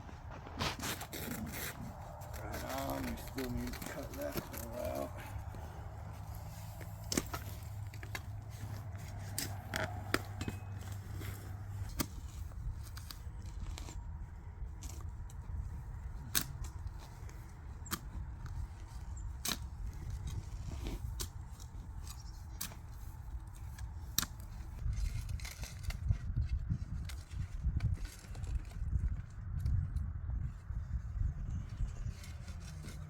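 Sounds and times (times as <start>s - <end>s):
low steady rumble: 0.0s - 24.0s.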